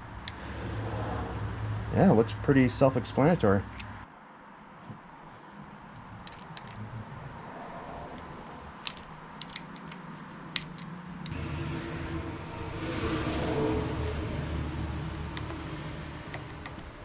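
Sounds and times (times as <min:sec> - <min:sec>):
plastic and metal parts clicking: 0:06.2 - 0:06.8, 0:08.4 - 0:11.0
steady low hum: 0:11.2 - 0:17.0.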